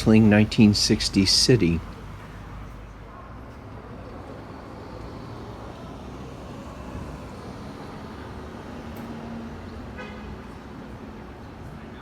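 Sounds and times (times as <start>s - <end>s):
passing cars hum: 0.0s - 12.0s.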